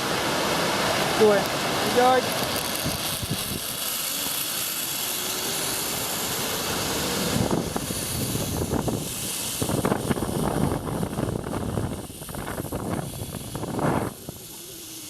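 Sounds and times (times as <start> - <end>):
zip line trolley whirring: 0.0 - 15.0
gusty rumbling: 1.6 - 3.9, 5.6 - 14.6.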